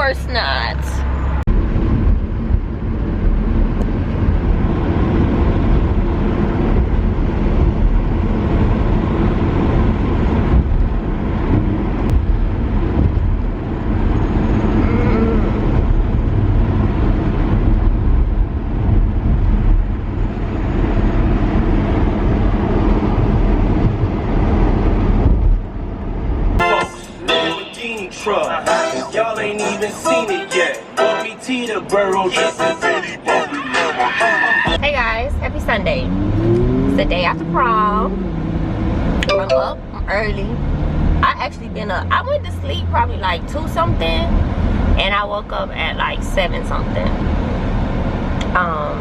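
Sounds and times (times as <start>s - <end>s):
car engine: 0.0s - 49.0s
road noise: 0.0s - 49.0s
wind rumble on microphone: 1.0s - 26.6s.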